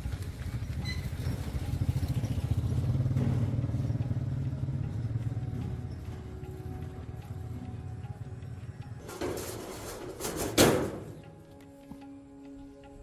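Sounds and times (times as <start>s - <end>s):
small gasoline engine running: 0.0s - 8.9s.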